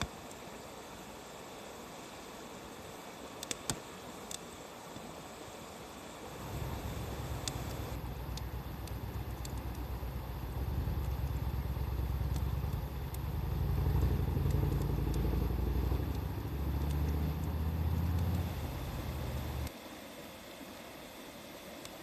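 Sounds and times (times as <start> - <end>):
wood fire crackling and popping: 3.4 - 5.1, 6.3 - 19.7
low engine-like rumble: 6.3 - 19.7.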